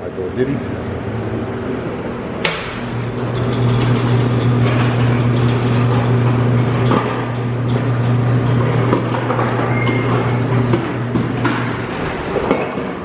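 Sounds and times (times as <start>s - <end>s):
vehicle engine running: 2.8s - 12.4s.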